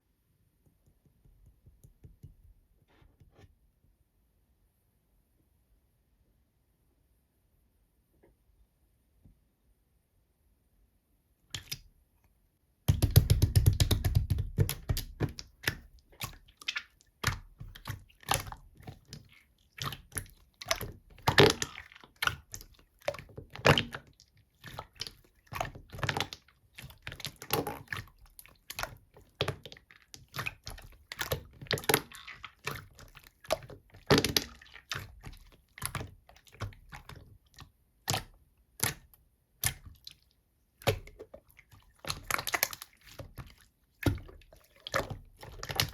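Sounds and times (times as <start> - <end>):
slime squished by hand: 12.9 - 45.9.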